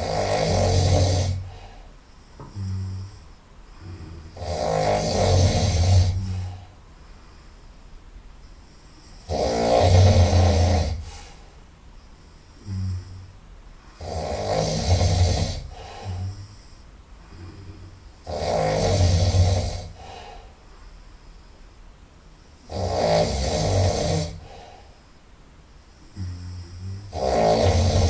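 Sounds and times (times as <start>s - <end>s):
person snoring loudly: 0.0s - 1.7s, 2.4s - 6.6s, 9.0s - 11.4s, 12.6s - 13.3s, 14.0s - 16.7s, 17.4s - 20.4s, 22.7s - 24.8s, 26.1s - 28.0s
faint breathing: 0.8s - 4.5s, 5.2s - 9.4s, 10.6s - 14.1s, 14.9s - 18.3s, 19.1s - 22.7s, 24.1s - 28.0s.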